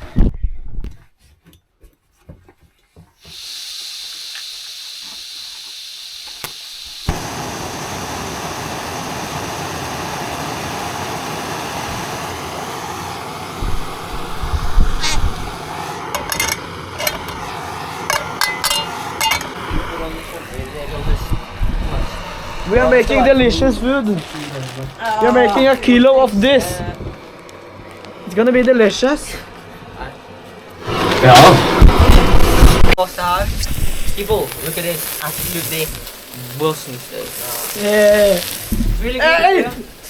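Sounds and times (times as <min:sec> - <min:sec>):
food sizzling in a pan: 0:03.2 - 0:28.4, 0:30.8 - 0:40.0
sharp metal clinks: 0:18.1 - 0:19.6.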